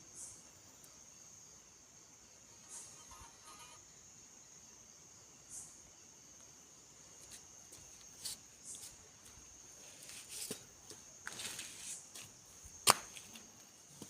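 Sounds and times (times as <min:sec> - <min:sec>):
crickets trilling: 0:00.0 - 0:14.0.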